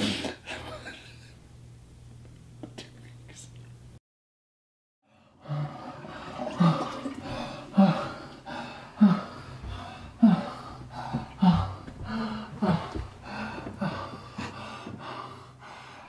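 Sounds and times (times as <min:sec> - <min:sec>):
man gasping breaths: 0:05.1 - 0:16.0.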